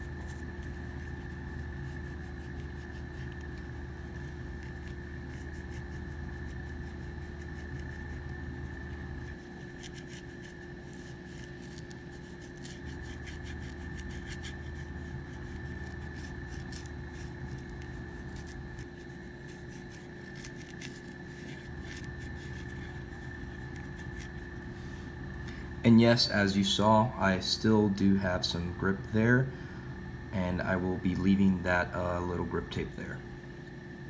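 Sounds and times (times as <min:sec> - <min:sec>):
swab scrubbing on plastic: 0:00.0 - 0:24.6
steady hum: 0:00.0 - 0:34.0.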